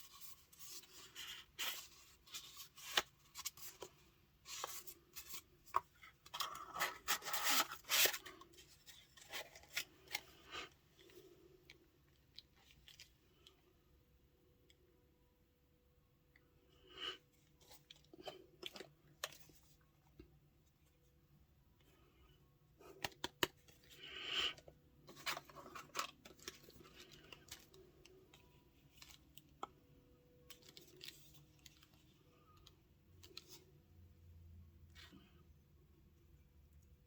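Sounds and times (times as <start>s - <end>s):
packaging crinkling and rustling: 30.4s - 33.6s.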